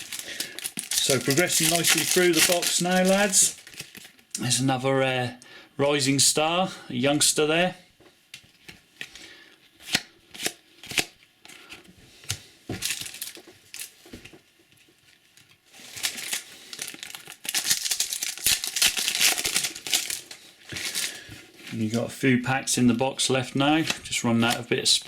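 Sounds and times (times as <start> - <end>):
wrapper tearing and crinkling: 0.0 - 4.3, 12.8 - 14.0, 15.7 - 21.2.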